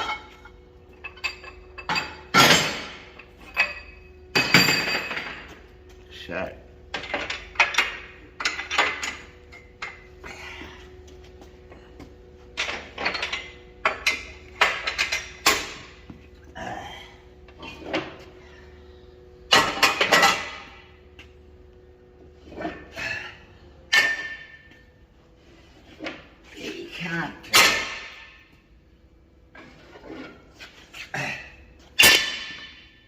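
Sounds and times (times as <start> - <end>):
metal clanks and scrapes: 0.0 - 5.7, 19.5 - 20.9, 29.5 - 33.0
faint steady hum: 0.0 - 33.0.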